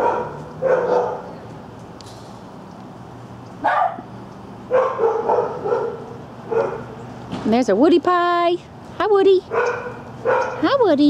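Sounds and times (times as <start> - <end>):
dogs barking: 0.0 - 1.4, 3.6 - 4.1, 4.7 - 7.0, 9.5 - 10.8.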